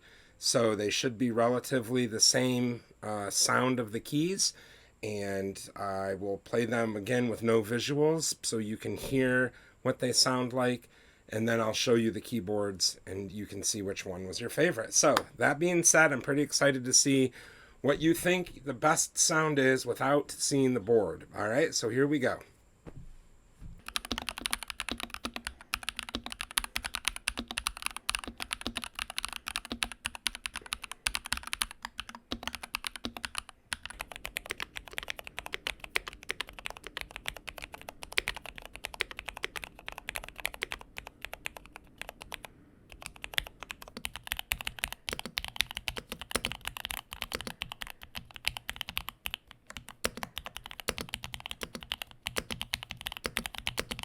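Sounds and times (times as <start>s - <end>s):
typing on mechanical keyboard: 23.8s - 54.0s.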